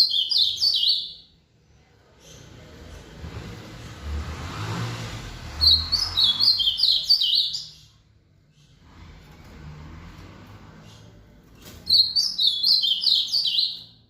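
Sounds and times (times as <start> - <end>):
bird singing whistled notes: 0.0 - 1.3, 5.6 - 7.9, 11.9 - 14.0.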